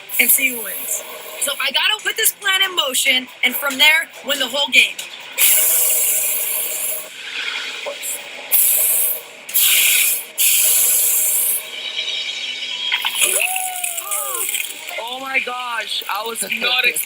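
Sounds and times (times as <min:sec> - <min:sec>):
hissing spray bursts: 0:05.4 - 0:07.1, 0:08.5 - 0:11.7.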